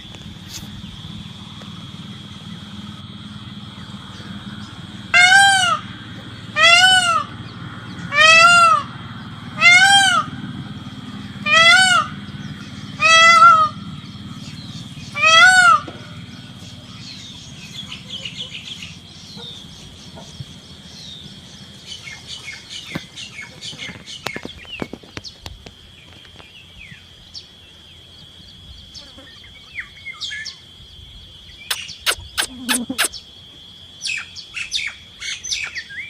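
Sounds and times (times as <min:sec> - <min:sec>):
small birds chirping: 0:00.0 - 0:09.6, 0:10.8 - 0:36.0
peacock call: 0:05.0 - 0:10.5, 0:11.4 - 0:14.0, 0:15.0 - 0:16.6, 0:31.7 - 0:33.2.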